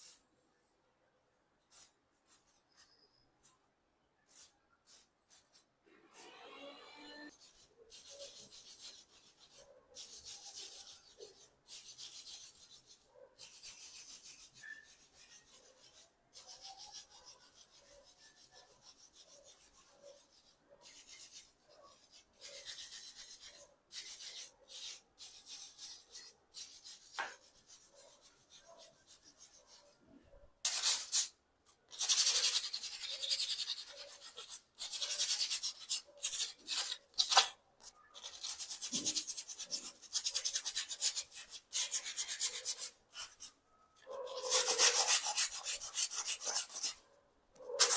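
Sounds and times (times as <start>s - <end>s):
abrasive scrubbing on bicycle part: 44.0s - 47.0s.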